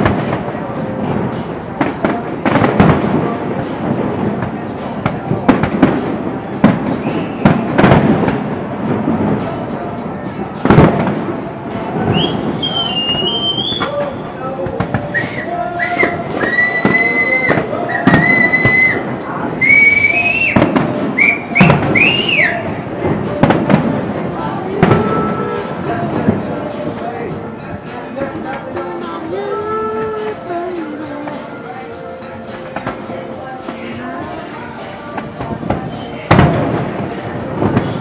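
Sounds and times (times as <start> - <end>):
music: 0.0 - 38.0
voices: 0.0 - 38.0
firework whistling: 5.9 - 8.4, 12.0 - 23.8
firework shells bursting: 10.6 - 27.1.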